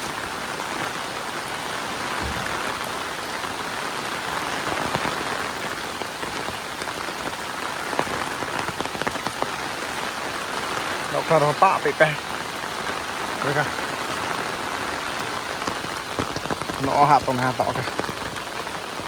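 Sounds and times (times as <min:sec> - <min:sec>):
heavy rain falling: 0:00.0 - 0:19.0
rain drop ticks: 0:04.3 - 0:19.0.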